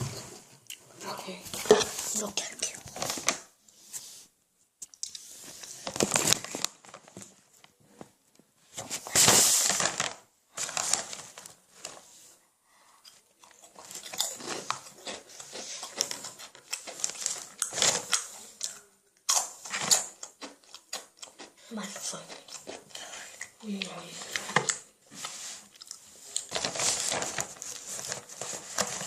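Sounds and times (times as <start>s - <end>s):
snack packaging crinkling: 4.8s - 7.4s, 8.9s - 12.0s, 13.0s - 29.0s
crunching snack chips: 13.4s - 21.5s.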